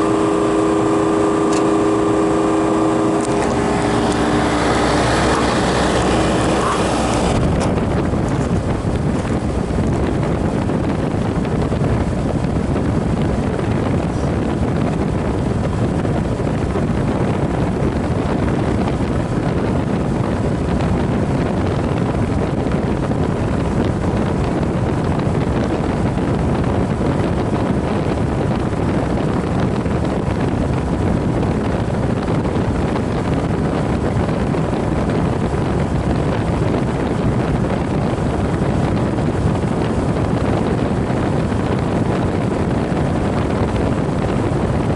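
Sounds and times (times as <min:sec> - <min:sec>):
condensing unit fan running: 0:00.0 - 0:18.6.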